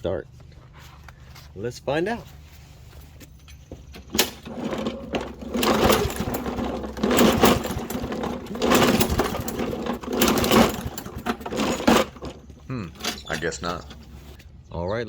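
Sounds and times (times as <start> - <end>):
mower engine turning over: 3.6 - 14.4.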